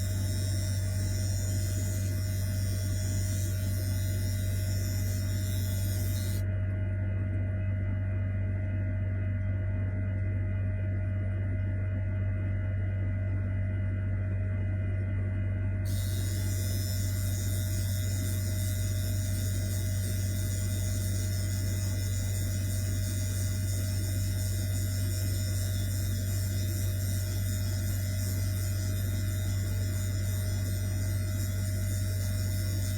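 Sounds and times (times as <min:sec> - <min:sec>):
hair dryer running: 0:00.0 - 0:06.4, 0:15.9 - 0:32.9.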